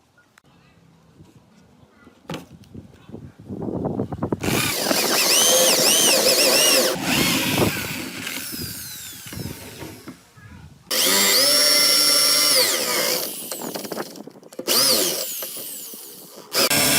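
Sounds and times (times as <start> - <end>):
power drill whining: 4.4 - 10.2, 10.9 - 16.9.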